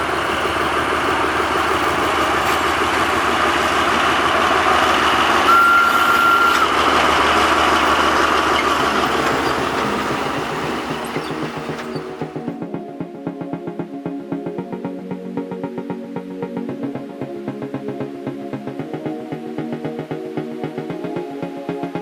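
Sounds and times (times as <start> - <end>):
diesel train rumbling past: 0.0 - 12.6
short high tone: 5.4 - 6.8.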